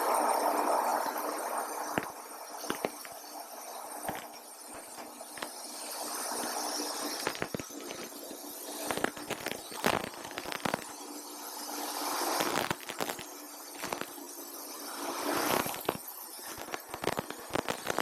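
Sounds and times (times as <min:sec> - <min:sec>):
machine hum and hiss: 0:14.8 - 0:18.0.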